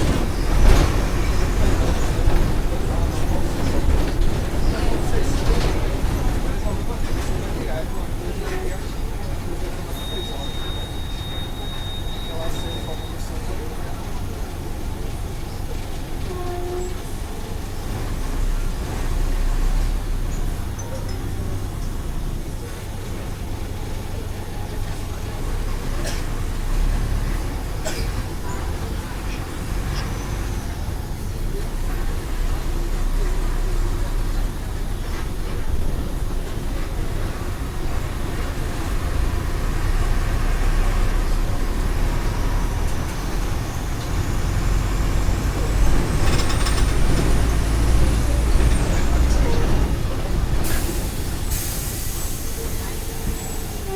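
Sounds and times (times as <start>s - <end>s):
bus diesel engine rumbling: 0.0s - 53.9s.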